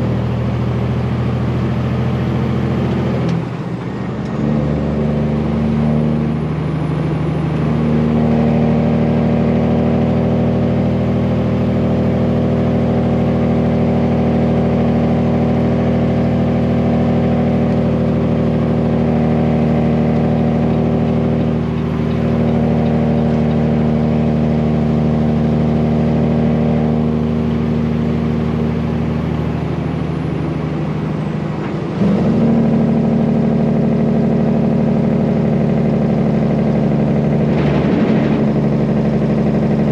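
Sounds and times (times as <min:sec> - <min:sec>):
truck diesel engine running: 0:00.0 - 0:39.9.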